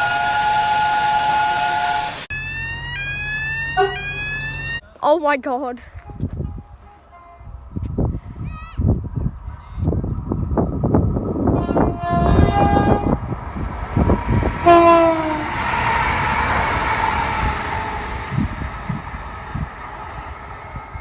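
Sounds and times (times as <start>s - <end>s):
train horn blasts: 0.0s - 2.3s, 6.0s - 7.8s, 11.5s - 13.4s, 14.0s - 18.5s
rush of train noise: 0.0s - 4.7s, 5.9s - 21.0s.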